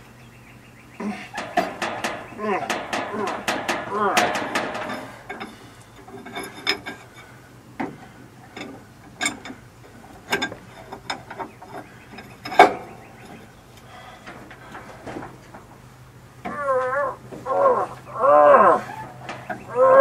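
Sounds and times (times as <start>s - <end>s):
faint steady hum: 0.0s - 20.0s
wrench clicking and knocking: 1.4s - 7.1s.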